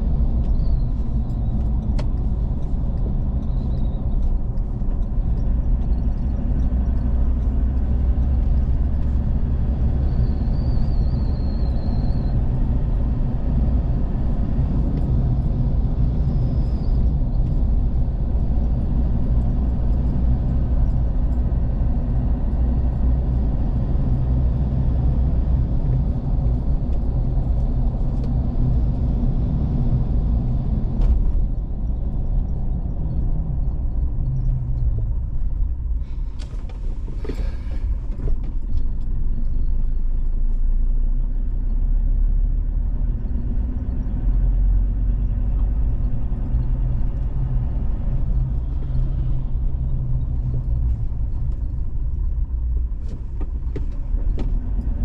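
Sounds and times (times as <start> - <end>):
car engine and road rumble: 0.0 - 55.0.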